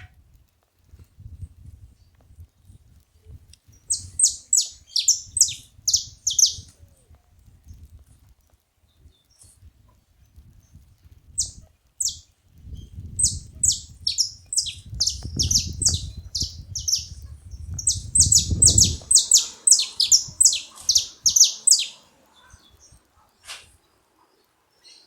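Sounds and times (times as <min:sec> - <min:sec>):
finches chirping: 0:03.8 - 0:06.6, 0:11.4 - 0:12.2, 0:13.2 - 0:23.0.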